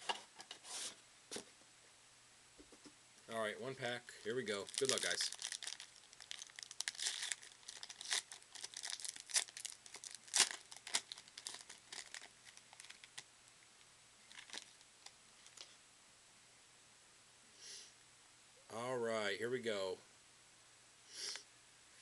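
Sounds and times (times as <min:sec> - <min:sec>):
foil pack tearing and crinkling: 0:04.5 - 0:13.2, 0:14.3 - 0:14.8.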